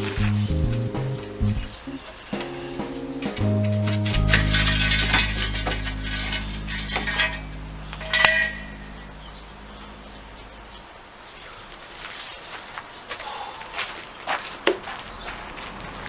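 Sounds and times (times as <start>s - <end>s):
background music: 0.0s - 10.8s.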